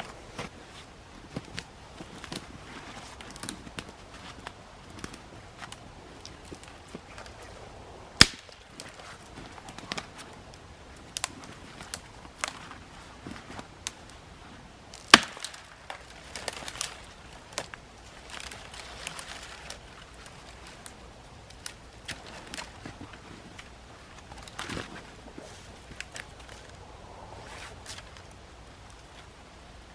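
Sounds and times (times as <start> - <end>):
axe chopping wood: 15.1 - 15.5.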